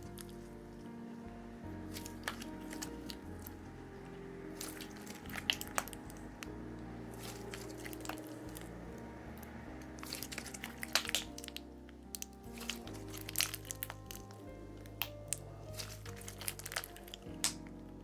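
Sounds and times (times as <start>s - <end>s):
background music with sustained notes: 0.0s - 18.0s
slime clicking and crackling: 1.9s - 3.7s, 4.5s - 6.5s, 7.1s - 8.8s, 9.4s - 18.0s.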